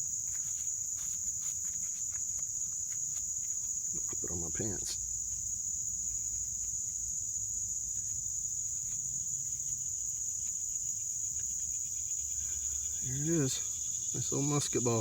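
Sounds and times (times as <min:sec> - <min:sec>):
insects buzzing: 0:00.0 - 0:15.0.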